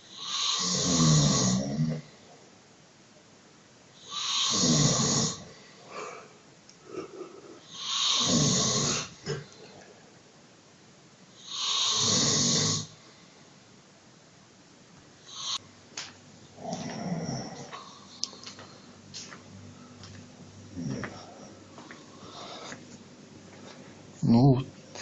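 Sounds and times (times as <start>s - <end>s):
man snoring: 0.0s - 2.1s, 4.0s - 6.2s, 6.9s - 9.5s, 11.4s - 13.0s, 16.6s - 18.0s.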